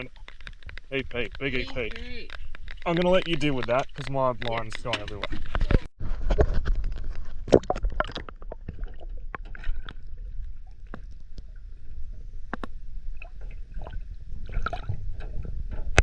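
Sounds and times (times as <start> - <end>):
fishing gear knocks and clicks: 0.0 - 5.9.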